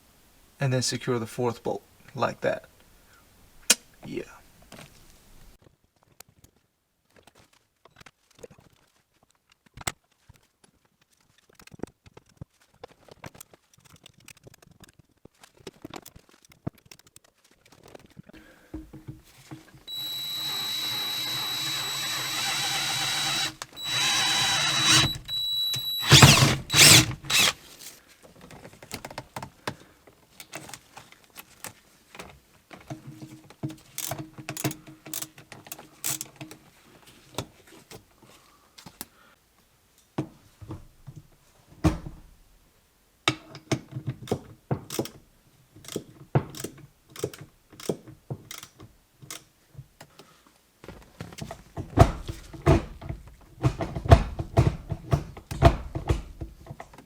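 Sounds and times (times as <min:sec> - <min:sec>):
power drill drilling metal: 0:19.9 - 0:27.6
light clicks and taps of tools: 0:28.9 - 0:36.6, 0:45.8 - 0:50.3.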